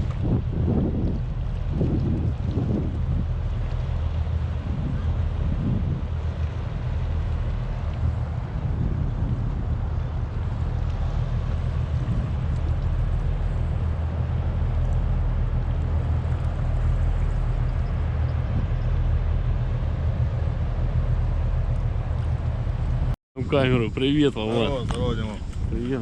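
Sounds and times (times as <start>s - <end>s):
constant low hum: 0.0s - 26.0s
wind buffeting microphone: 0.0s - 26.0s.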